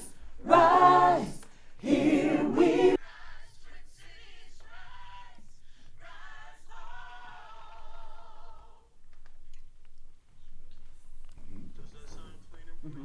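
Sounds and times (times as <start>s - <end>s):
gospel choir singing: 0.0s - 3.4s, 6.0s - 8.8s.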